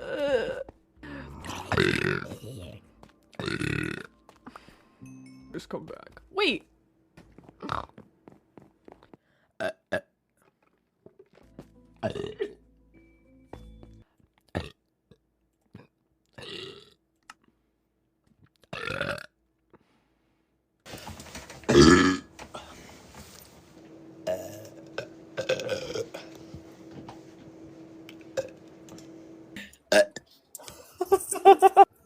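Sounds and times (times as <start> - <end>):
women burping: 0.0 - 2.6, 21.7 - 22.3, 24.3 - 26.3
faint steady hum: 20.9 - 29.8.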